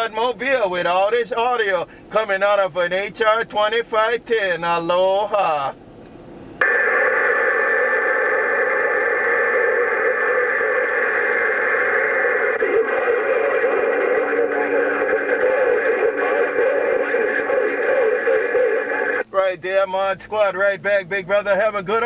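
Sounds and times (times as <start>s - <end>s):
radio static hiss: 6.6s - 22.0s.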